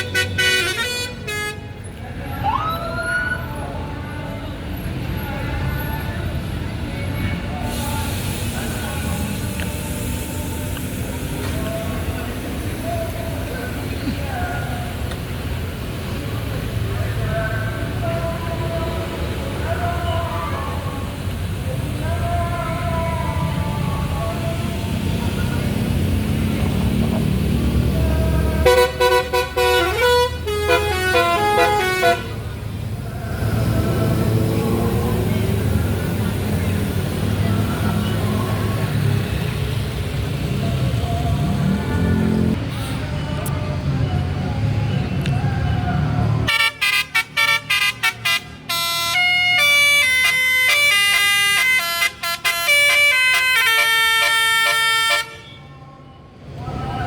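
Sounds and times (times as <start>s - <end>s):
multi-tone bus horn tune: 0.0s - 1.9s, 27.9s - 32.6s, 46.4s - 55.7s
bus engine running: 0.0s - 55.6s.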